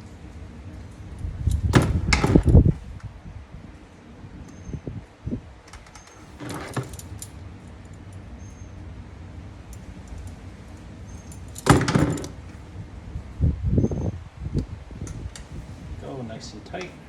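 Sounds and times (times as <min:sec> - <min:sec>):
metal parts clinking and rattling: 0:05.7 - 0:08.8, 0:09.6 - 0:12.6
loud metal clatter: 0:11.5 - 0:12.5.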